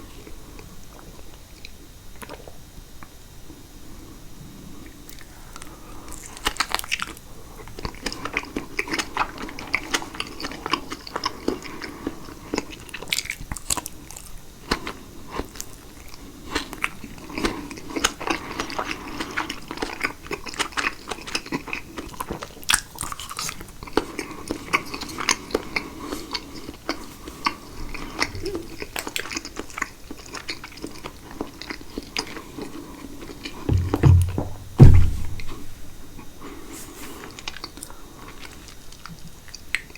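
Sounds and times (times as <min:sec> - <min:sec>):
close chewing and biting: 0:06.1 - 0:32.4.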